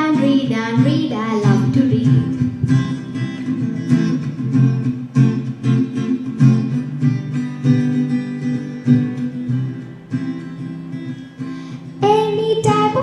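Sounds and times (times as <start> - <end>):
person singing: 0.0 - 2.5, 12.0 - 13.0
acoustic guitar strumming: 0.0 - 13.0.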